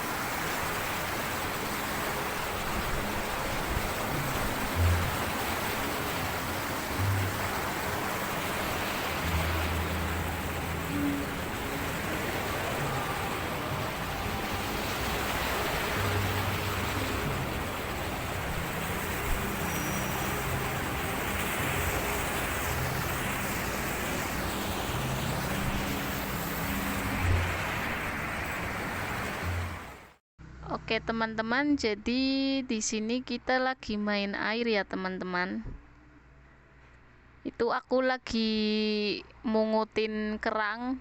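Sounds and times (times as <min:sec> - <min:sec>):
strong sea wind: 0:00.0 - 0:30.1
surf: 0:00.0 - 0:30.2.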